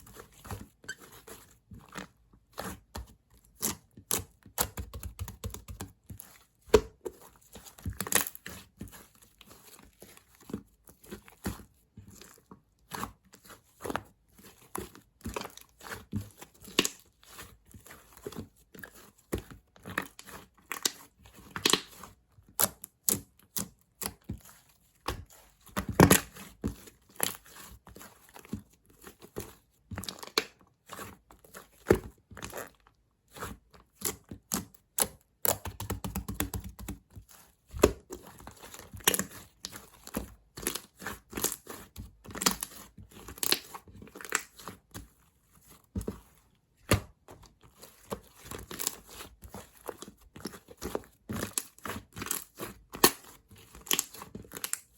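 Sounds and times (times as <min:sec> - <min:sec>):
slime squished by hand: 0:33.3 - 0:45.0, 0:46.8 - 0:54.9.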